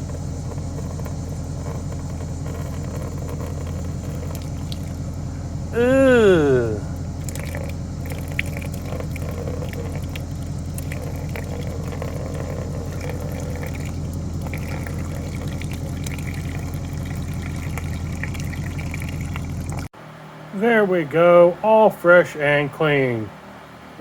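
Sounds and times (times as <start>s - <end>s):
pressure washer spraying water: 0.0s - 5.8s, 6.8s - 19.8s.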